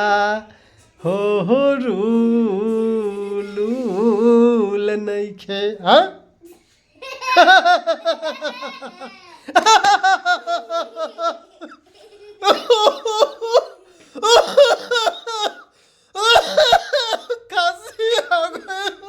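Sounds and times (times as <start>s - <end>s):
person laughing heartily: 7.0s - 19.0s.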